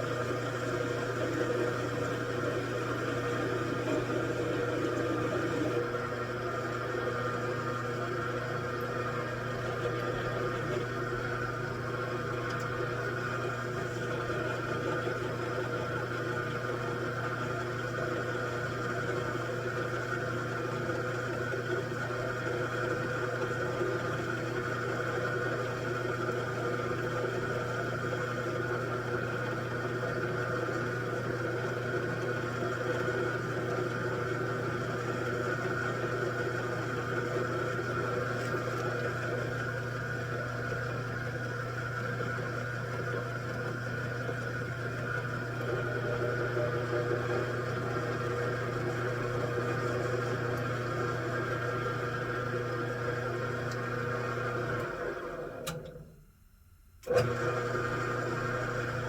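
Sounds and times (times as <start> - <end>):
machine tool motor hum: 0.0 - 19.6.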